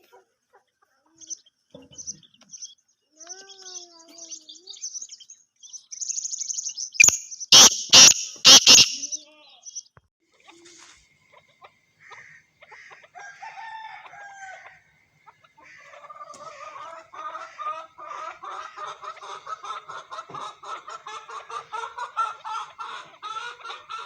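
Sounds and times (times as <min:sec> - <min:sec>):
francolins calling: 0:02.2 - 0:09.9.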